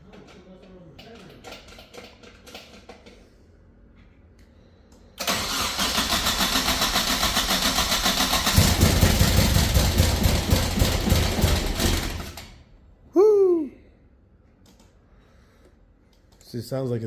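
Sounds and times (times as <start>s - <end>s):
engine firing roughly: 5.2s - 12.6s
engine starter cranking: 5.2s - 12.6s.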